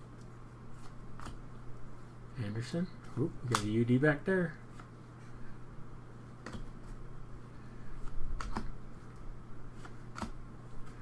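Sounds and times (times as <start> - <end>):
cards clicking: 3.4 - 3.8, 8.0 - 8.7, 9.8 - 11.0.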